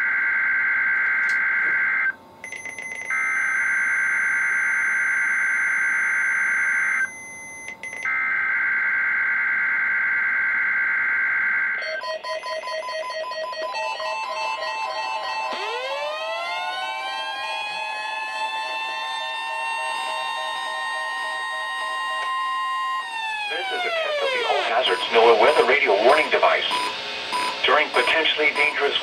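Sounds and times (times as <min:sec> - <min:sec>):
two-tone data screech: 0:23.4 - 0:29.0
short electronic beeps: 0:24.7 - 0:28.9.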